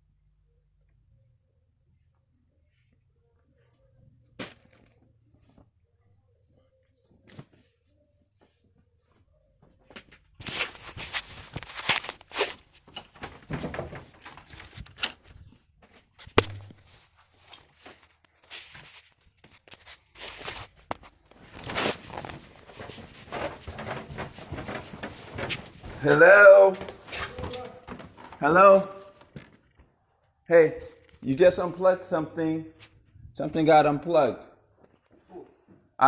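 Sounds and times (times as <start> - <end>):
footsteps: 8.4 - 31.9
handling noise rustles and clicks: 10.0 - 29.9.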